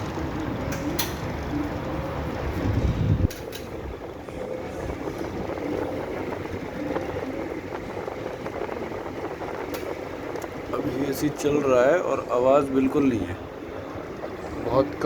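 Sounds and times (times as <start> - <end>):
air conditioner fan humming: 0.0 - 15.0.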